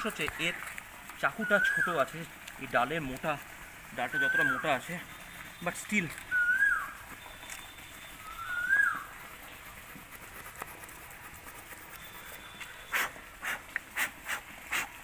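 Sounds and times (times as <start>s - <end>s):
bird call: 1.3s - 2.2s, 4.0s - 9.8s, 11.9s - 13.6s
small saw cutting wood: 1.9s - 15.0s.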